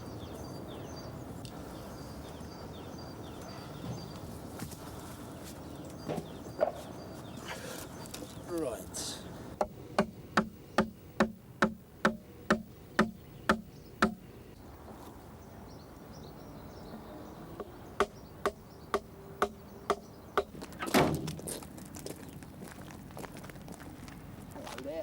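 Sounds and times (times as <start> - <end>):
hand tool striking timber: 9.6 - 14.2, 18.0 - 21.4.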